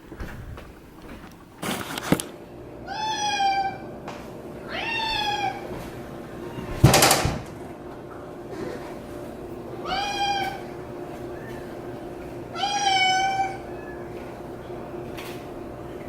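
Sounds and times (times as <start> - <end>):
cat meowing: 2.8 - 3.8, 4.6 - 5.6, 9.8 - 10.7, 12.5 - 14.2.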